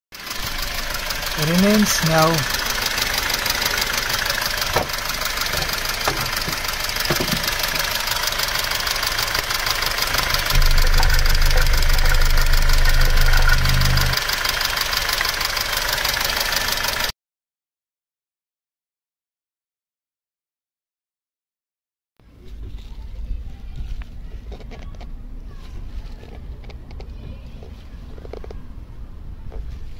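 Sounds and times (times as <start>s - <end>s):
engine idling: 0.2s - 17.1s
fast ticking knock: 2.4s - 14.2s
low drone: 10.4s - 14.2s.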